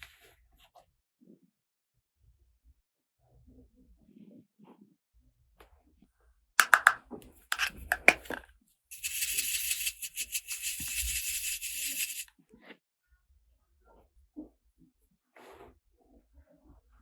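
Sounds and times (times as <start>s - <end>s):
plastic clicks and crackles: 6.6s - 7.0s, 7.6s - 12.2s
steady scratchy hiss: 7.6s - 12.2s.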